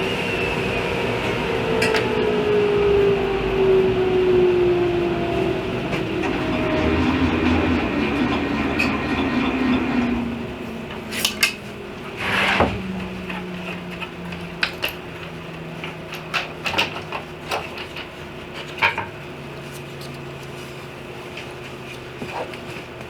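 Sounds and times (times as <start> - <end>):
saw blade coasting down: 5.8 - 13.5.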